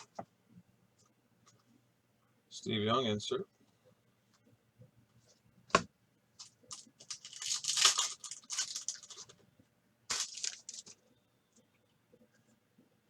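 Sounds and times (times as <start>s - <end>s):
card pack wrapper tearing: 6.7s - 9.3s, 10.1s - 10.9s.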